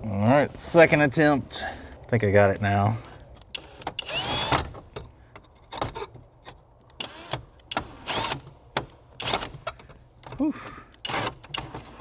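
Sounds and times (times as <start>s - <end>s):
cordless drill driving screw: 3.6s - 4.7s, 7.0s - 8.4s, 11.0s - 12.0s.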